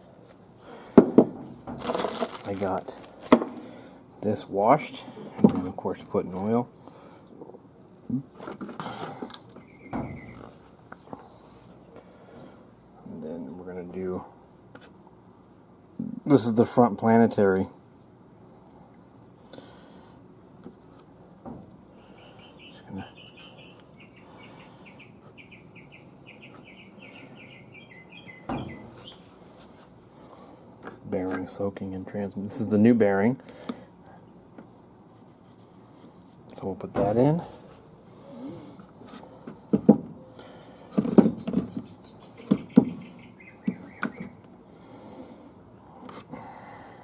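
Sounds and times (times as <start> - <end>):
bird chirping: 9.6 - 10.6, 21.9 - 29.4, 40.2 - 44.5.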